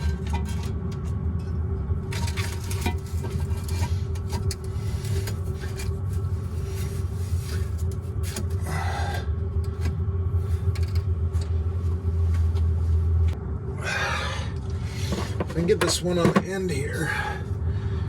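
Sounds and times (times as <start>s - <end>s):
metal parts scraping and rubbing: 0.0s - 1.2s, 2.0s - 8.6s
steady low rumble: 0.0s - 18.0s.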